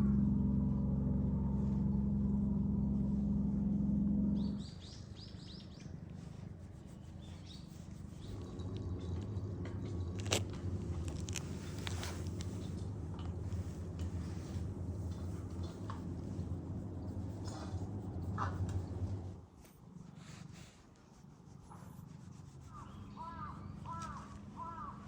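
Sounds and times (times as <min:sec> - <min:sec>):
low engine hum: 0:00.0 - 0:25.0
small bird chirps: 0:06.8 - 0:10.3.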